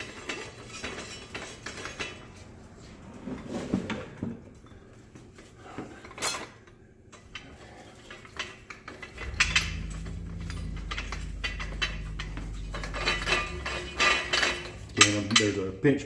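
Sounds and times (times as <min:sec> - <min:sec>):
steel parts clinking and scraping: 0:00.0 - 0:02.5, 0:06.0 - 0:15.8
steady low hum: 0:09.1 - 0:16.0.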